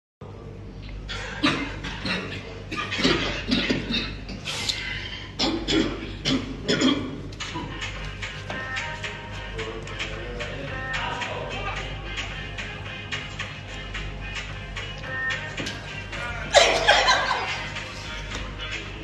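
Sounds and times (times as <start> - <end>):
music: 1.0 - 19.0
person coughing: 1.1 - 4.2, 5.2 - 7.7.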